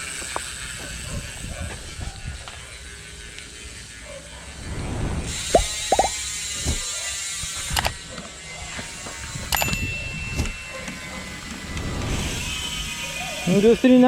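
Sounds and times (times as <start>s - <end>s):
bike hub freewheeling buzz: 0.0s - 14.0s
sharp clicks: 7.6s - 8.0s.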